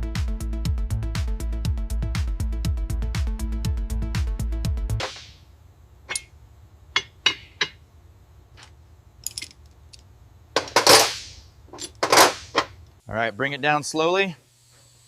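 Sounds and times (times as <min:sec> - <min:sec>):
metal tools clinking: 0:07.0 - 0:07.8, 0:08.6 - 0:10.0, 0:10.6 - 0:12.8.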